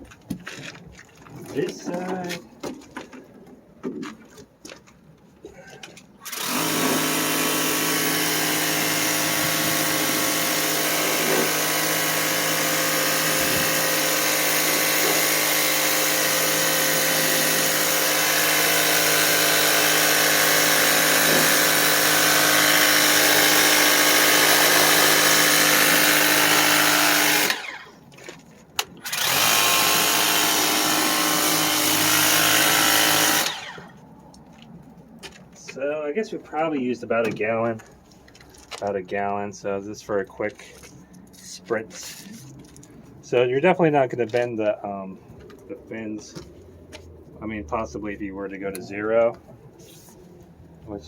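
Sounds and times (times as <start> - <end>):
pump motor humming: 5.8 - 28.4, 29.0 - 34.0.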